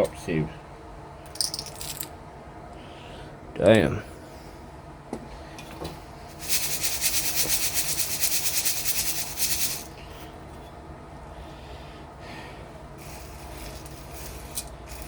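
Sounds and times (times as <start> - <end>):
gravel rattling in a sieve: 6.4 - 9.9, 13.0 - 15.0.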